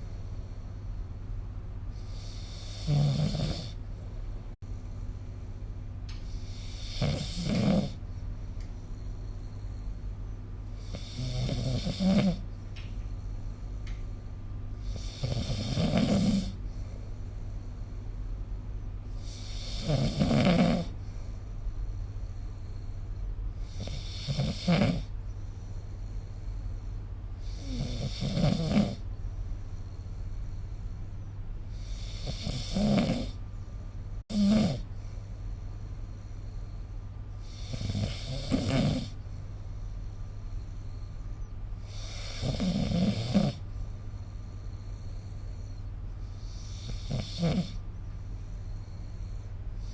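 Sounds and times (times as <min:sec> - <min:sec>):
steady low hum: 0:00.0 - 0:49.9
person snoring: 0:02.0 - 0:03.8, 0:06.4 - 0:08.0, 0:10.8 - 0:12.4, 0:14.8 - 0:16.6, 0:19.2 - 0:21.0, 0:23.6 - 0:25.1, 0:27.4 - 0:29.0, 0:31.7 - 0:33.4, 0:34.3 - 0:34.9, 0:37.5 - 0:39.2, 0:41.8 - 0:43.6, 0:46.5 - 0:47.8.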